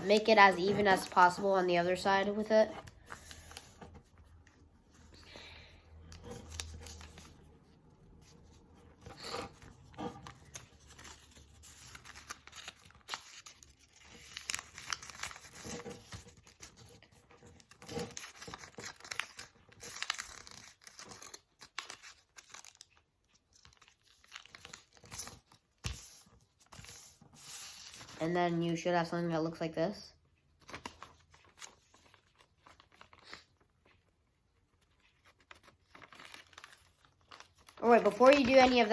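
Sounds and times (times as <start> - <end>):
paper rustling and crinkling: 0.0 - 28.9, 30.6 - 38.9.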